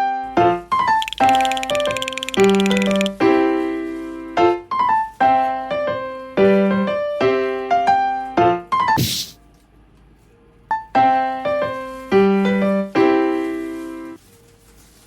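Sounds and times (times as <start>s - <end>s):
electric piano melody: 0.0s - 8.7s
brief hiss: 9.0s - 9.4s.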